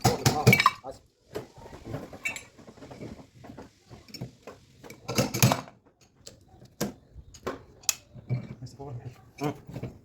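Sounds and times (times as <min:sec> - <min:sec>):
tools clattering: 0:02.2 - 0:06.2.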